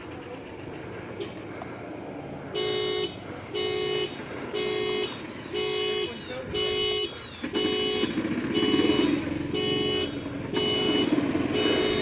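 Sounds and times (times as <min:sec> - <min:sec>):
horn blasts: 0:02.5 - 0:12.0.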